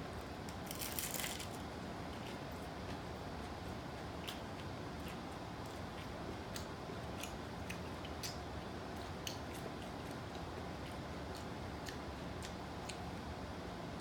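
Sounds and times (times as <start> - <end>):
person chewing crunchy taco shells: 0.4 - 8.4.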